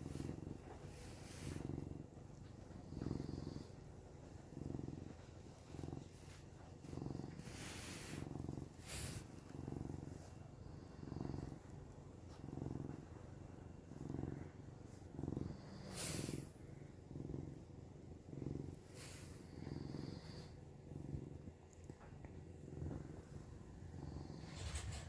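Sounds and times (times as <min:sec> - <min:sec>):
pet snoring exhales: 0:00.0 - 0:01.9, 0:02.8 - 0:03.8, 0:05.8 - 0:11.7, 0:14.1 - 0:17.4, 0:18.2 - 0:20.6
cat purring: 0:00.0 - 0:25.0.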